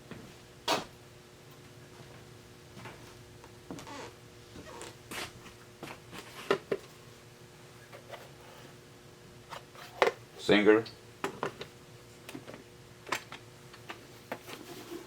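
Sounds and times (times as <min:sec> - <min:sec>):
faint steady hum: 0:00.0 - 0:15.0
objects rustling and knocking: 0:13.9 - 0:15.0.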